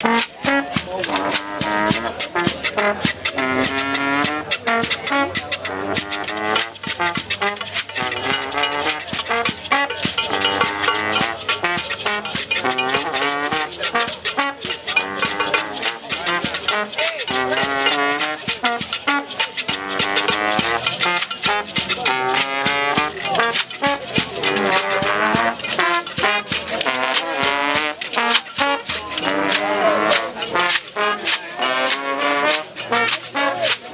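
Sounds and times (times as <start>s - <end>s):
shaker rhythm: 0.0s - 33.9s
wavering melody: 3.4s - 26.5s.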